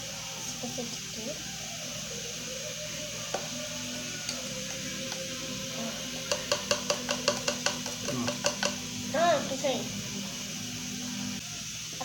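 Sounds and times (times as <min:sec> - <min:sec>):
spoon clinking against container: 0:06.2 - 0:08.8.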